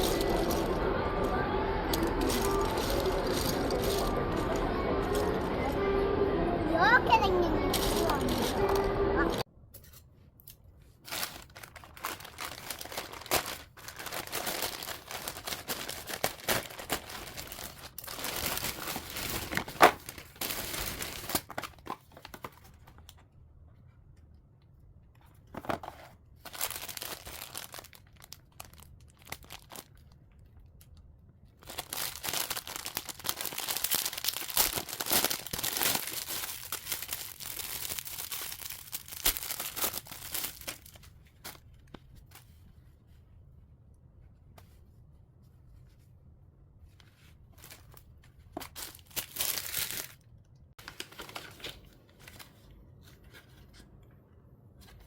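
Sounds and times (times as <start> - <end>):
packaging crinkling and tearing: 0.0 - 5.7, 7.7 - 8.9, 11.0 - 23.2, 25.5 - 31.0, 31.6 - 42.5, 47.5 - 52.6.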